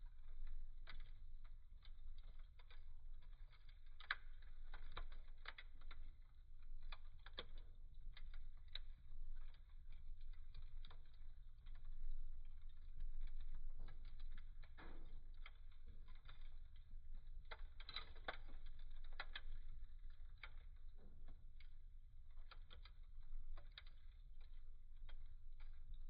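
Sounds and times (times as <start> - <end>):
wood fire crackling: 0.0 - 26.0.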